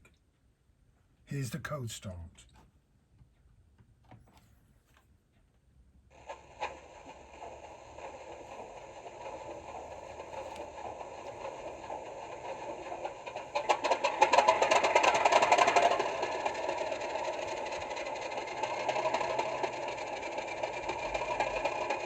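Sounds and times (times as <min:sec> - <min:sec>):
diesel locomotive engine starting: 0:06.1 - 0:22.0
rapid engine clatter: 0:06.1 - 0:22.0.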